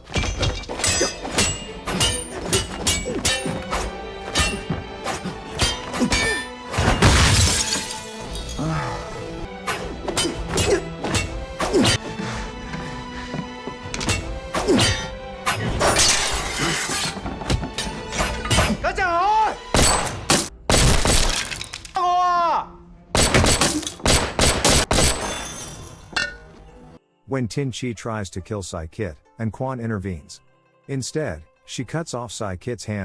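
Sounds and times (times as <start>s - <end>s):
punch and kick impacts: 0.0s - 7.9s, 9.6s - 12.0s
glass shattering: 0.0s - 8.6s, 15.8s - 18.7s, 19.8s - 22.0s, 24.9s - 26.8s
dramatic film score: 0.0s - 27.0s.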